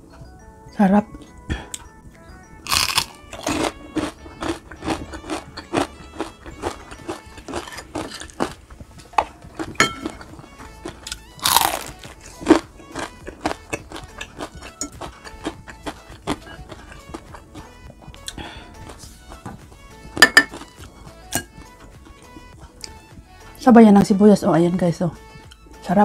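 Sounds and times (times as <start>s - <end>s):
background music: 0.0s - 26.0s
crunching crispy fried food: 2.6s - 8.6s, 10.8s - 16.8s.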